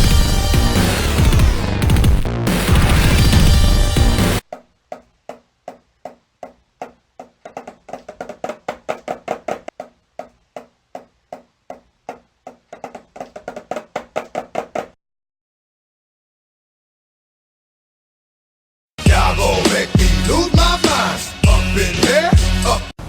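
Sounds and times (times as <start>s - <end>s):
rhythmic pitched knocking: 4.2s - 15.0s.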